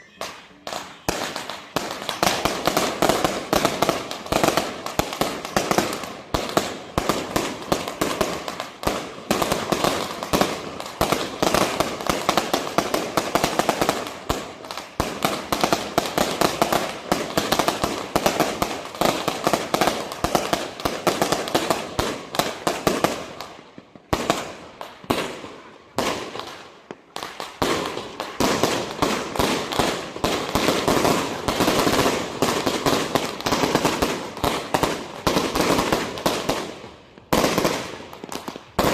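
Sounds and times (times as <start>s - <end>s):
firecrackers crackling: 0.0s - 38.9s.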